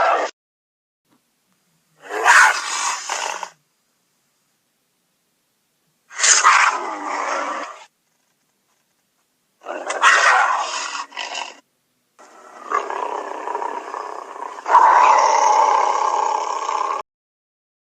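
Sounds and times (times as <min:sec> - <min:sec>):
jaguar roaring: 0:02.0 - 0:03.6, 0:06.1 - 0:07.9, 0:09.6 - 0:11.6, 0:12.2 - 0:17.0.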